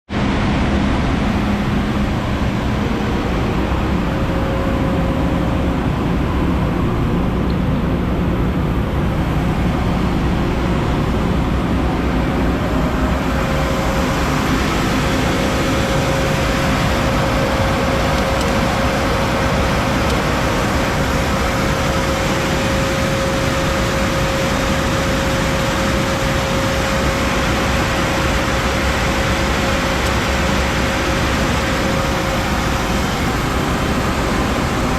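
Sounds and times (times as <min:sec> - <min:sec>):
faint machine whine: 0:00.2 - 0:34.9
belt sander running: 0:08.2 - 0:34.9.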